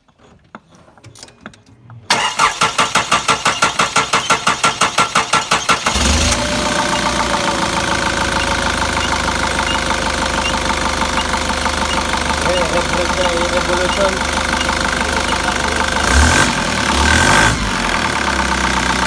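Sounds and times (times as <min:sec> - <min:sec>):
diesel engine cranking: 0:02.1 - 0:19.0
diesel engine idling: 0:02.1 - 0:19.0.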